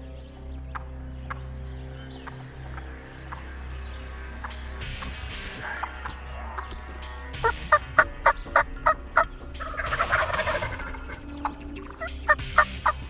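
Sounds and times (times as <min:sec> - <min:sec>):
turkeys yelping: 0:02.0 - 0:13.0
turkey gobbling: 0:04.4 - 0:13.0.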